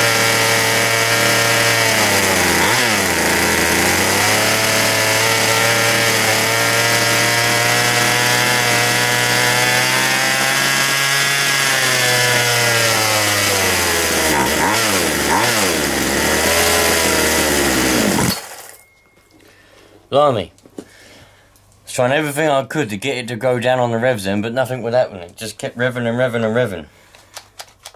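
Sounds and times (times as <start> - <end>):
chainsaw engine racing: 0.0 - 18.7.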